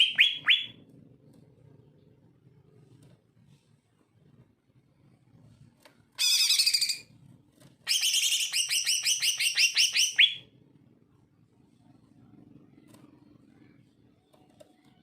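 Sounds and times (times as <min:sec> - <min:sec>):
bird singing: 0:00.0 - 0:00.7, 0:07.9 - 0:10.4.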